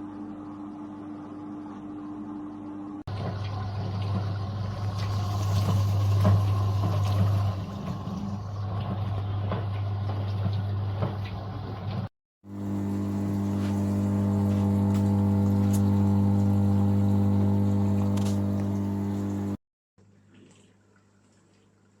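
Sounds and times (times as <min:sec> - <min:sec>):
dishwasher motor hum: 0:01.2 - 0:19.6
washing water rushing: 0:03.1 - 0:12.0, 0:12.6 - 0:19.6.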